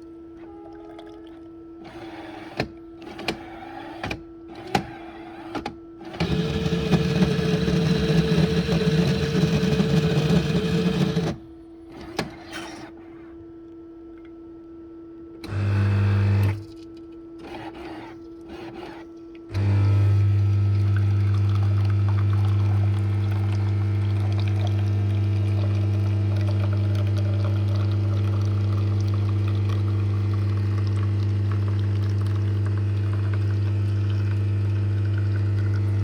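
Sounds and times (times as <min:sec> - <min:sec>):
steady background hum: 0:00.0 - 0:06.2, 0:11.1 - 0:15.4
coffee maker motor running: 0:00.5 - 0:11.4, 0:15.4 - 0:16.6, 0:17.5 - 0:36.0.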